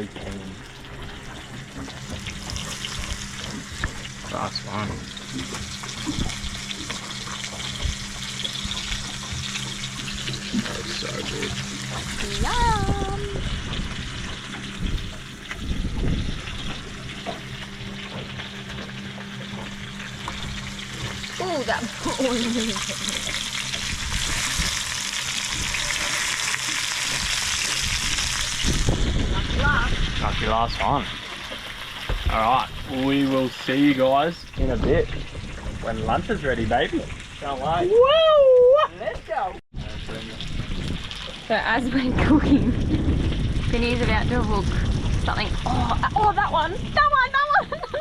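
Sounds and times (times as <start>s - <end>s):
fish deep-frying in hot oil: 0.0s - 48.0s
low rumble: 0.0s - 48.0s
low steady hum: 0.0s - 48.0s.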